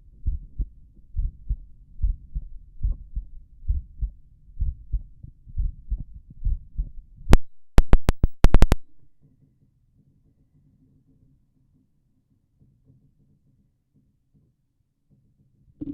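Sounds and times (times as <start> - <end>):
heartbeat: 0.0 - 8.9
sharp clicks: 7.8 - 8.8.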